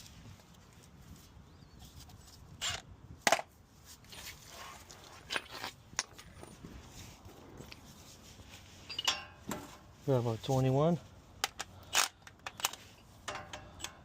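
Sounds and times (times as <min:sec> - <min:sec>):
metal tool clicks and knocks: 0:11.4 - 0:14.0.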